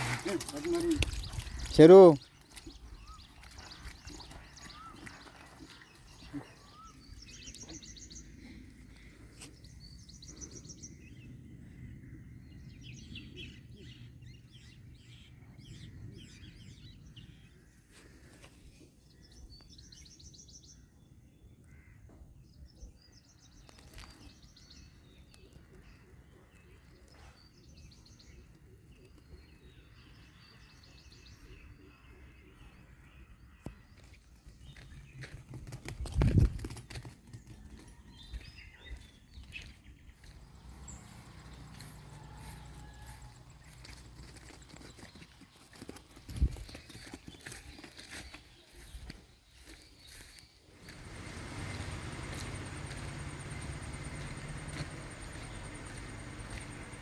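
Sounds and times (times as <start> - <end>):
birds chirping in rapid trills: 0.0 - 17.6, 37.4 - 57.0.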